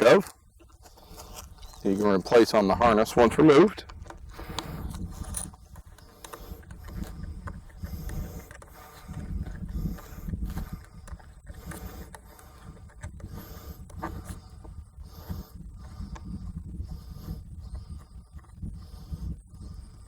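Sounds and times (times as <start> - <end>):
wind buffeting microphone: 0.0 - 20.0
clicks and knocks of handled parts: 0.2 - 14.5.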